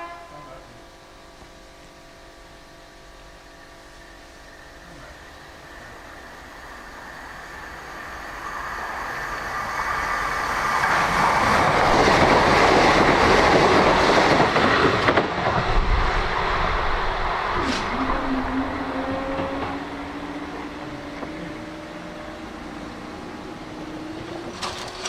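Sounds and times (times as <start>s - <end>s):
train wheels clattering on rails: 9.8s - 16.2s, 19.0s - 20.0s, 24.2s - 25.0s.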